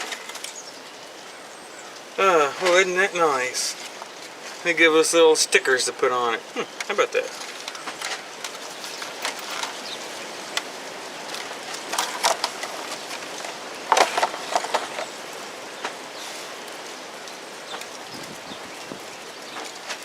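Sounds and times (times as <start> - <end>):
outdoor hiss: 0.0 - 20.0
light clicks and rustles: 6.6 - 15.2.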